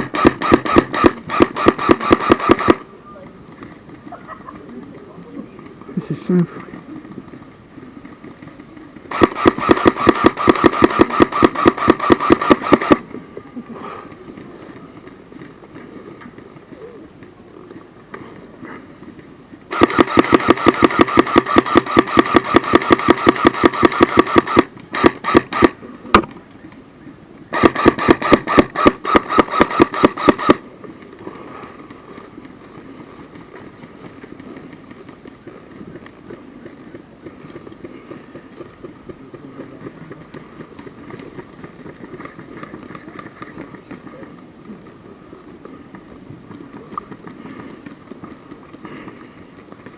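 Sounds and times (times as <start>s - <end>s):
airsoft gun firing: 0.0s - 2.8s, 9.1s - 13.1s, 19.7s - 26.3s, 27.5s - 30.7s.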